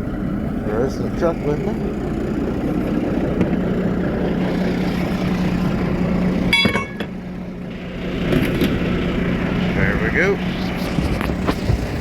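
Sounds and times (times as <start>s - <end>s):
truck diesel engine running: 0.0s - 12.0s
sharp metallic clank: 6.5s - 7.2s.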